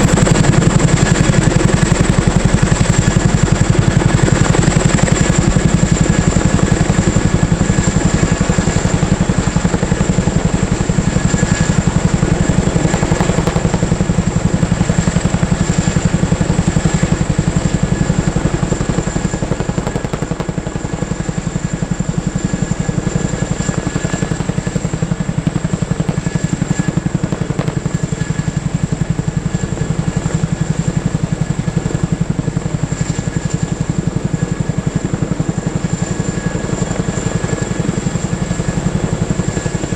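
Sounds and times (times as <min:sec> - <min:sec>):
helicopter rotor chop: 0:00.0 - 0:39.9
high turbine whine: 0:07.6 - 0:29.1.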